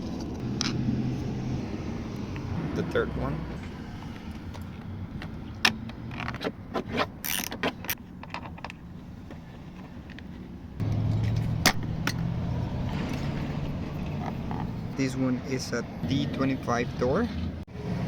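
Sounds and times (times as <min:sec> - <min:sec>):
low engine hum: 0:08.8 - 0:15.0.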